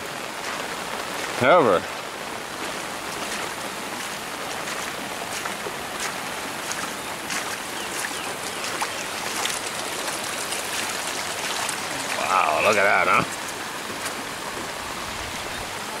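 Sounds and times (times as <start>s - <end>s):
rain hissing: 0.0s - 16.0s
running floodwater: 0.0s - 16.0s
raindrops ticking: 2.6s - 14.8s.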